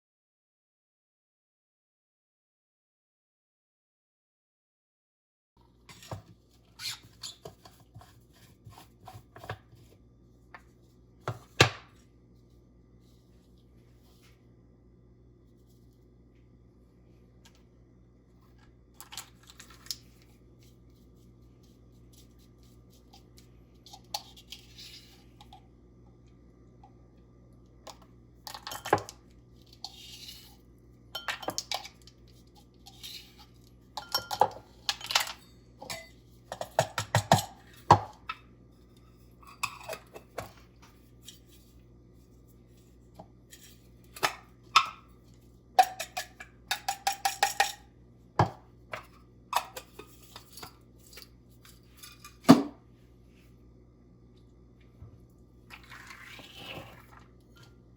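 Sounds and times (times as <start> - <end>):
kitchen utensils clinking: 31.2 - 32.0, 34.0 - 37.9, 39.4 - 40.6, 45.8 - 47.8.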